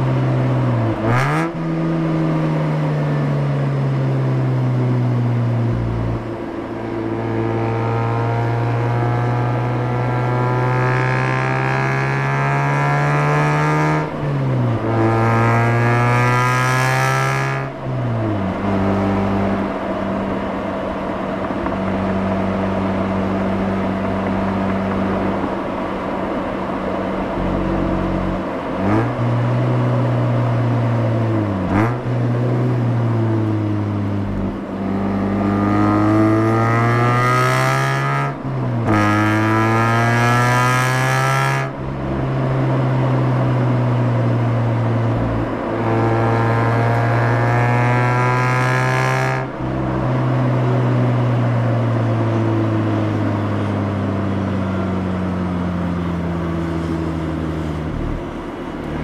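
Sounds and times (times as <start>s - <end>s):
rotary engine accelerating: 0.0s - 26.0s, 26.6s - 59.0s.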